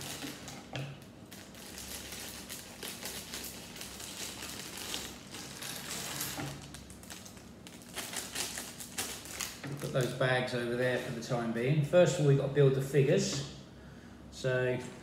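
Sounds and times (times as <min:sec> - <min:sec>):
plastic bags crinkling: 0:00.0 - 0:10.4.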